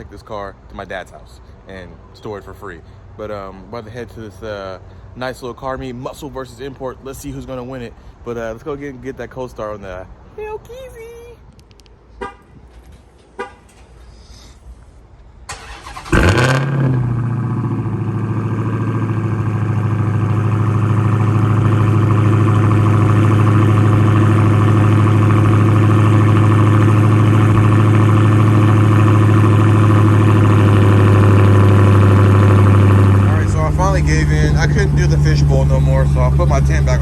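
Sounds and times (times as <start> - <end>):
engine cranking: 15.5 - 16.8
engine revving and idling: 15.6 - 37.0.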